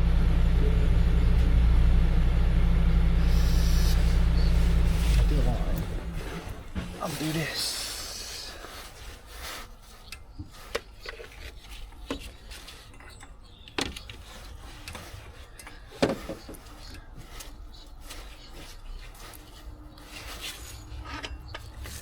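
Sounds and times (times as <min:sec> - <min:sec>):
rubbing and scraping on metal: 0:03.2 - 0:22.0
sharp knocks and clicks: 0:12.0 - 0:15.0.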